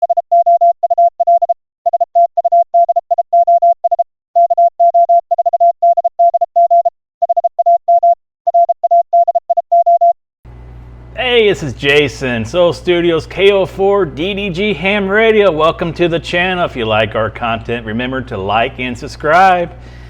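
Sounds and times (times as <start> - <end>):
morse code beeps: 0.0 - 10.2.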